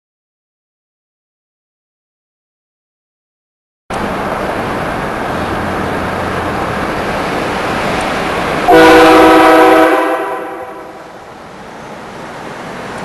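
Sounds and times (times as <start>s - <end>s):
truck driving: 3.9s - 13.0s
train horn chord: 8.7s - 11.1s.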